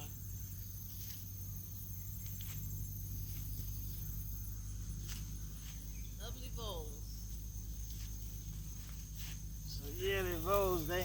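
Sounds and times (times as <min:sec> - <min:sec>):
insects chirring: 0:00.0 - 0:11.0.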